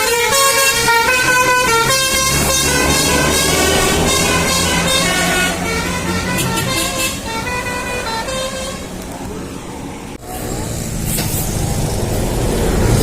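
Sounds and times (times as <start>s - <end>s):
musical bus horn tune: 0.0s - 9.0s.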